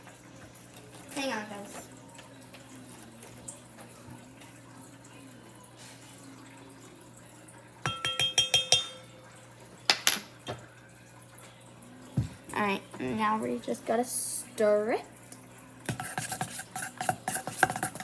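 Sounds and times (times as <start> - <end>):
metal spoon tapping a bowl: 7.8 - 9.1.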